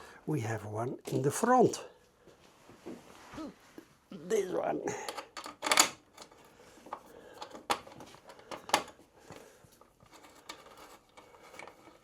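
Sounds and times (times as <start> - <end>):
faint rustling: 1.8 - 4.1
parts clicking and knocking: 5.0 - 12.0.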